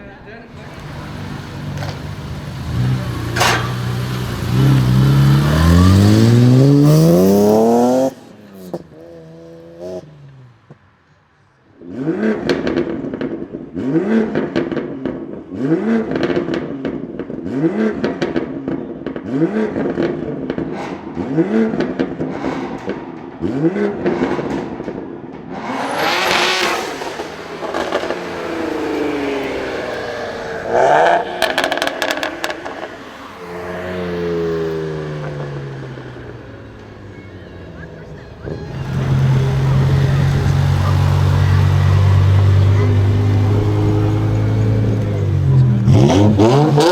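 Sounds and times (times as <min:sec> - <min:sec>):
car engine revving: 0:00.5 - 0:10.4, 0:23.4 - 0:46.9
exhaust crackles and pops: 0:00.6 - 0:07.6, 0:24.0 - 0:33.3.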